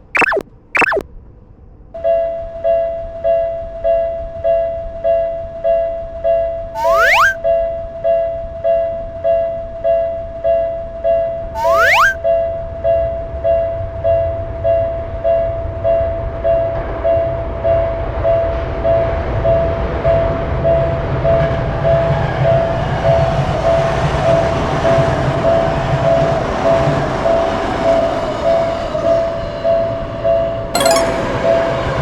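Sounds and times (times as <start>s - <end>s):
level crossing bell ringing: 30.8s - 31.8s.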